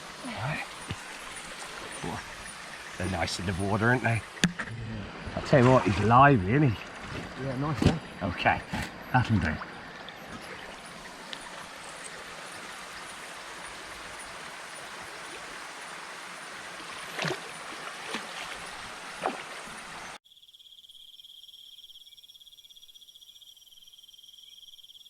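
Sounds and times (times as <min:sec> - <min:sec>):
rushing water: 0:00.0 - 0:20.2
high-pitched insect chorus: 0:00.0 - 0:25.0
sharp water splashes: 0:05.4 - 0:08.0, 0:09.6 - 0:20.2.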